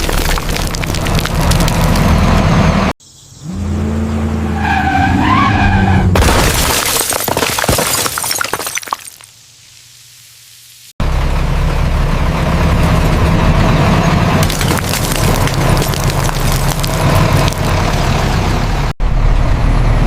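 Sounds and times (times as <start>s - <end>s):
objects crunching under wheels: 0.0s - 2.5s, 14.4s - 17.9s
truck engine running: 11.0s - 20.0s.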